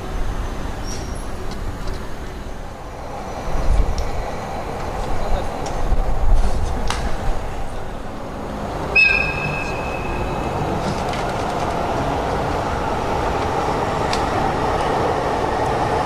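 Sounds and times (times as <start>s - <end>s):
train wheels rumbling on rails: 0.0s - 16.0s
high-pitched squeal: 8.8s - 14.1s.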